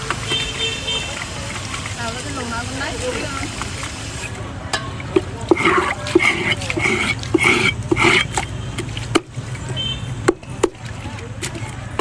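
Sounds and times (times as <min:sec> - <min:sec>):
knife strokes on chopping board: 0:05.5 - 0:08.4.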